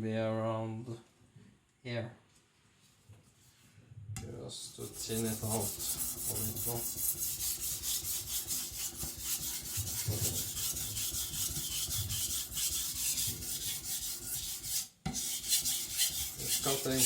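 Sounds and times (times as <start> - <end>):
blade scraping on whetstone: 4.8 - 17.0.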